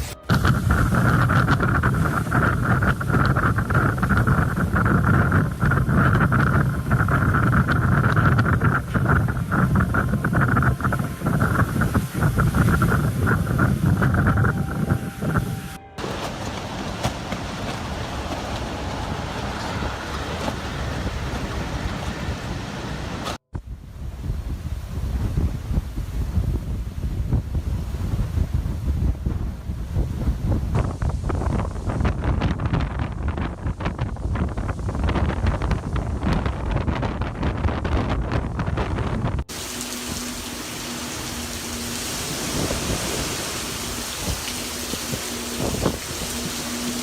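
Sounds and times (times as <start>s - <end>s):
heavy rain hiss: 0.0s - 23.4s, 39.5s - 47.0s
water splashing: 0.0s - 23.4s, 39.4s - 47.0s
wind buffeting microphone: 0.0s - 47.0s.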